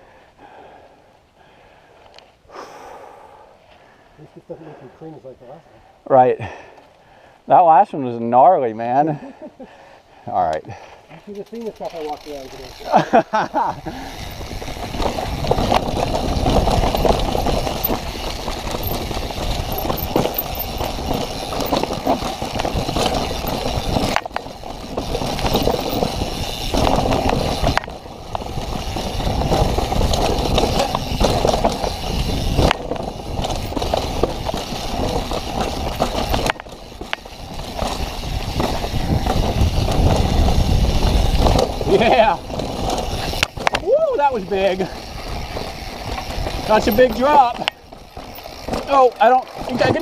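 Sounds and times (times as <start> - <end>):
bike rattling: 10.7 - 50.0
tyres rolling over dirt and rock: 14.1 - 50.0
wind on microphone: 37.4 - 43.9.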